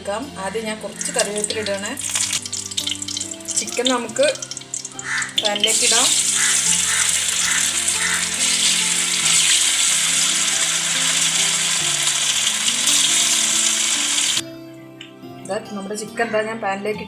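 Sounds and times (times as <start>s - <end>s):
background music low notes: 0.0s - 17.0s
chicken sizzling in oil: 1.0s - 14.4s.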